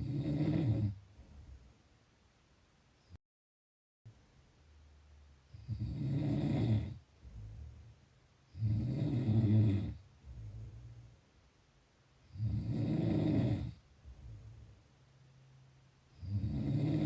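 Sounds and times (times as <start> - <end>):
person snoring: 0.0 - 1.0, 5.5 - 7.7, 8.5 - 10.8, 12.3 - 14.6, 16.1 - 17.0
soft breath: 7.1 - 8.1, 10.0 - 11.4, 14.0 - 14.9.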